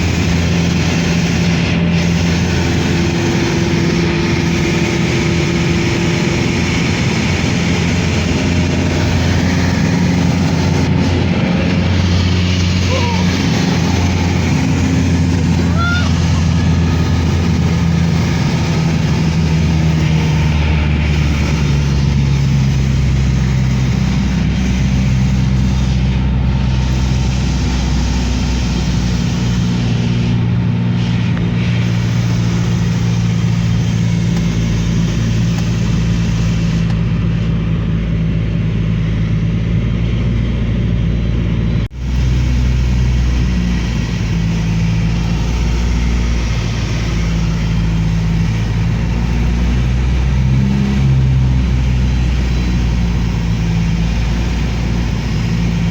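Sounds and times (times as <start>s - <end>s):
light aircraft engine drone: 0.0s - 55.9s.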